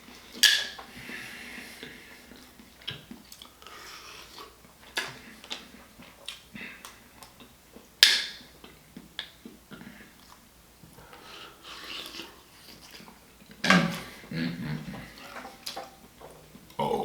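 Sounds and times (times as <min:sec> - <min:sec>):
wet chewing and mouth smacking: 0:01.8 - 0:13.6.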